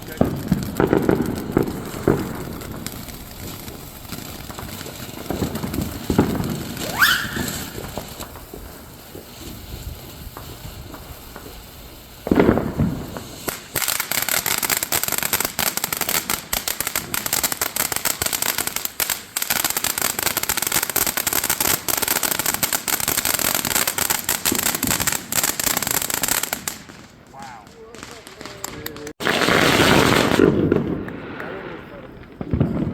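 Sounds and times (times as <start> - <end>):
firework bang: 0.0 - 32.9
firework crackling pops: 0.0 - 32.9.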